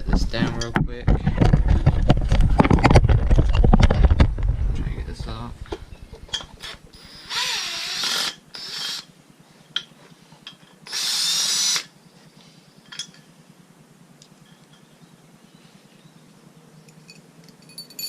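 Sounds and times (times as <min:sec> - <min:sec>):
power drill motor whine: 0:06.6 - 0:09.1, 0:10.8 - 0:11.9.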